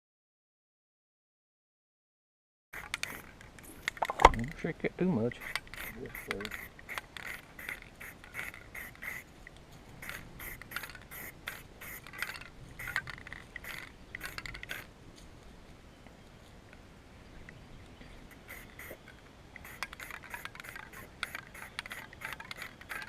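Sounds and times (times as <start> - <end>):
rhythmic metallic clicking: 19.6 - 23.0.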